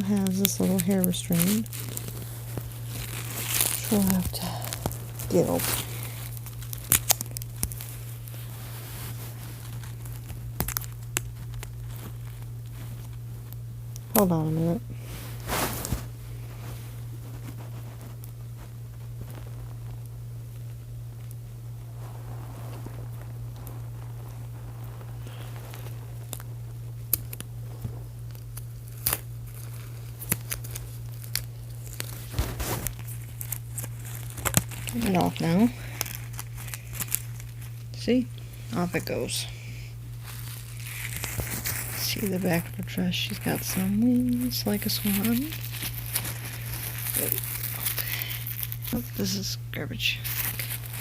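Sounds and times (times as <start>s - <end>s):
plastic clicks and crinkles: 0.0s - 14.4s
faint rustling: 0.0s - 51.0s
steady low hum: 0.0s - 51.0s.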